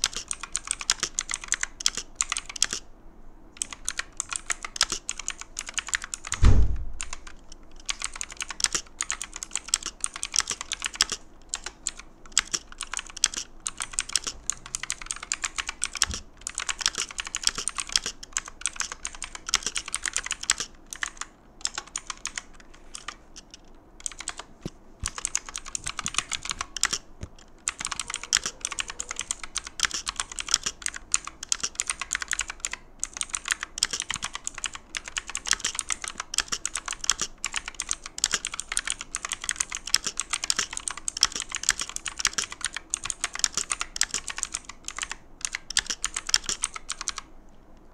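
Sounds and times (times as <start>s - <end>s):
clicky mechanical keyboard typing: 0.0s - 2.9s, 3.6s - 47.3s
heavy thump: 6.4s - 7.0s.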